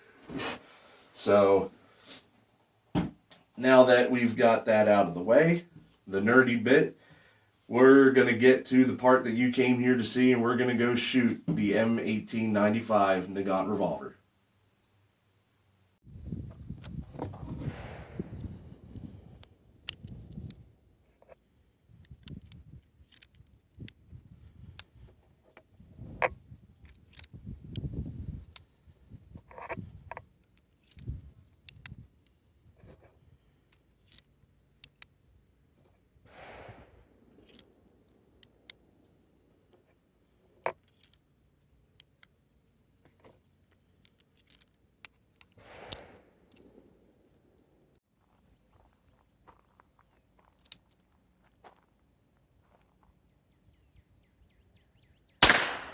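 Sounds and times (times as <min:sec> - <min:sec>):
revolver metallic clicks: 0:55.4 - 0:55.9.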